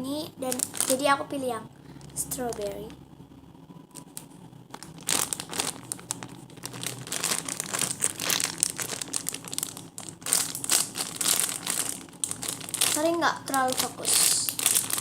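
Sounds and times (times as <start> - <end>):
wrapping crinkling and crumpling: 0.4 - 1.2, 3.9 - 15.0.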